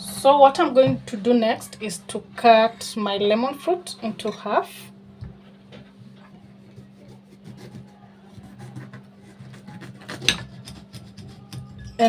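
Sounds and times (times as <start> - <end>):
knife cutting lemon: 6.6 - 11.8.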